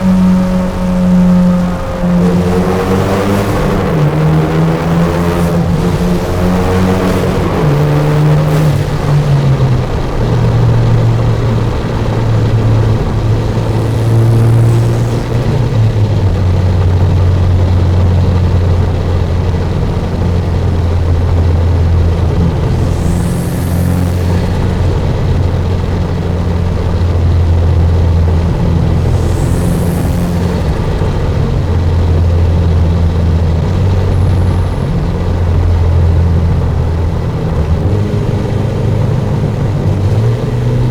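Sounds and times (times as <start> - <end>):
hissing whooshes: 0.0 - 17.0, 20.8 - 32.5
car exhaust drone: 0.0 - 40.9.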